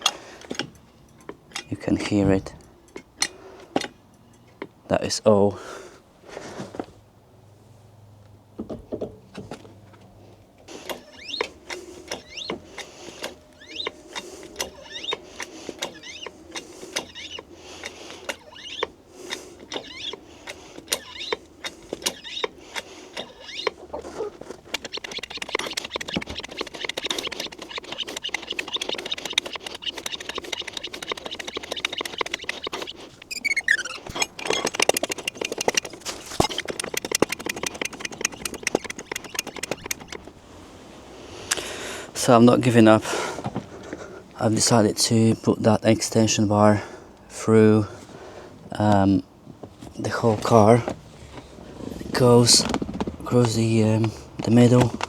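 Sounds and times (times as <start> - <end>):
short falling squeak: 10.8 - 17.5, 18.3 - 19.0, 19.7 - 20.2, 20.9 - 21.4, 22.0 - 22.5, 23.2 - 40.3.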